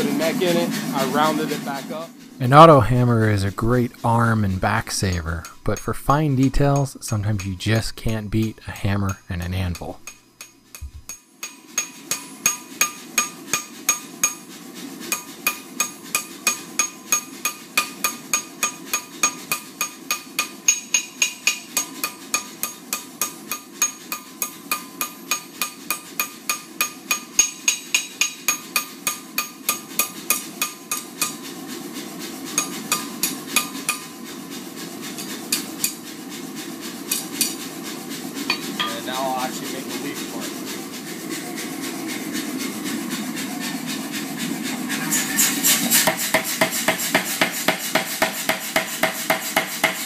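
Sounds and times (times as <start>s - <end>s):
low rush: 2.4s - 10.1s
hammer ringing on anvil: 5.1s - 7.7s, 9.0s - 14.4s, 15.2s - 31.3s, 38.5s - 39.0s.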